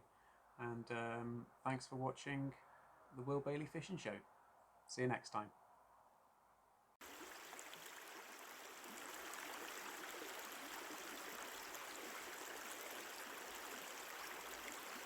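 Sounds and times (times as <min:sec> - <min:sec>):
river flowing: 0:07.0 - 0:15.0.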